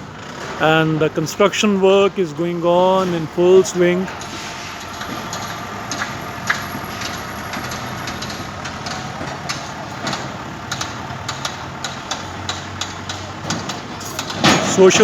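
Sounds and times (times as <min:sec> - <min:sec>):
heavy engine running: 0:00.0 - 0:15.0
short knocks and clanks: 0:04.2 - 0:15.0.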